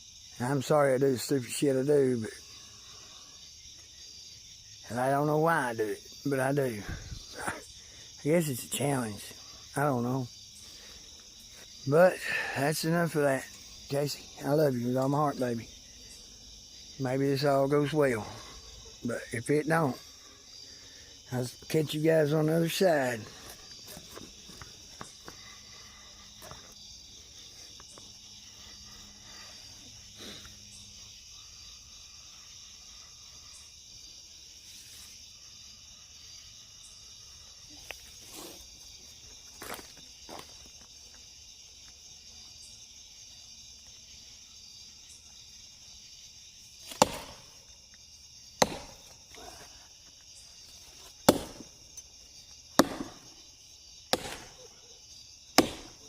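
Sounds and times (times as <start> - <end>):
night insects chirring: 0.0 - 56.0
axe chopping tree trunk: 46.8 - 47.6, 48.6 - 49.4, 51.0 - 52.1, 52.8 - 53.4, 54.1 - 54.7, 55.6 - 56.0.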